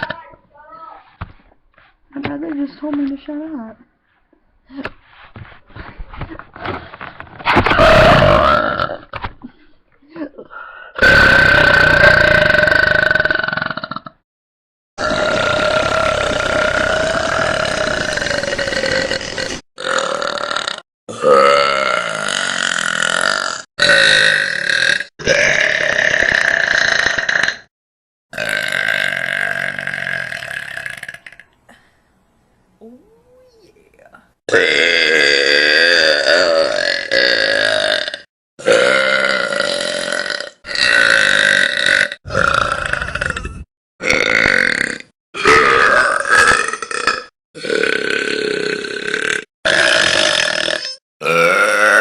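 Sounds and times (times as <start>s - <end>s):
girls burping: 34.5s - 52.0s.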